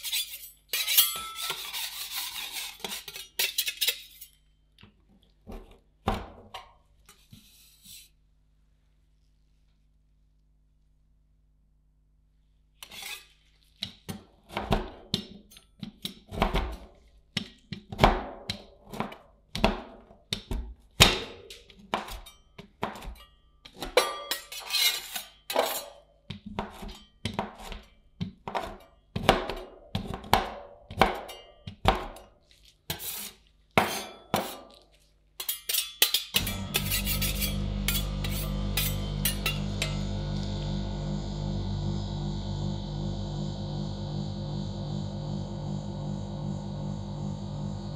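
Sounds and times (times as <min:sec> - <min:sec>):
steady hum: 0:36.4 - 0:47.9.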